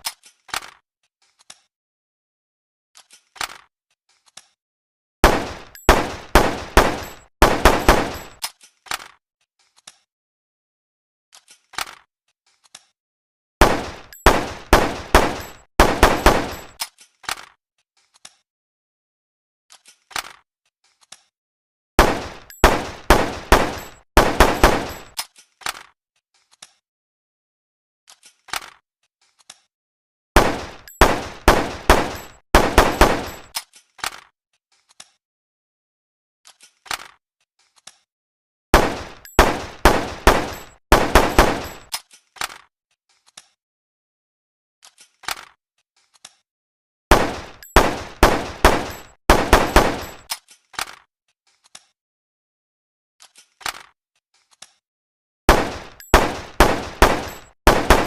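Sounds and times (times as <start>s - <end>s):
handgun shots: 5.2s - 8.4s, 13.6s - 16.8s, 22.0s - 25.2s, 30.4s - 33.5s, 38.8s - 41.9s, 47.1s - 50.3s, 55.5s - 58.0s
rapid gunshots: 5.2s - 8.4s, 13.6s - 16.8s, 22.0s - 25.2s, 30.4s - 33.5s, 38.8s - 41.9s, 47.1s - 50.3s, 55.5s - 58.0s.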